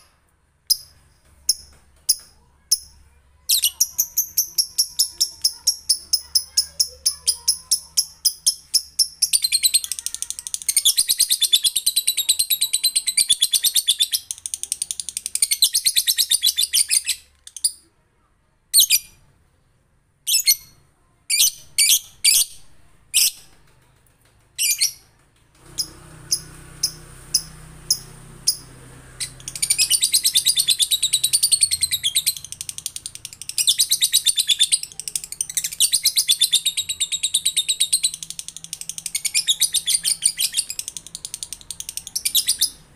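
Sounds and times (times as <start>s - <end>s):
lovebird high-pitched trill: 25.8s - 34.9s
bird sharp chirps: 25.8s - 38.3s.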